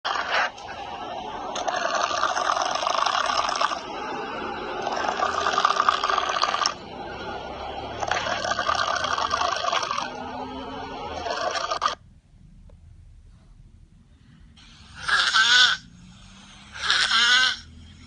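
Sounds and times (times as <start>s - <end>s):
person snoring: 0.1s - 6.8s, 7.9s - 12.0s, 14.8s - 18.0s
quiet breaths: 12.5s - 15.0s, 15.8s - 16.9s.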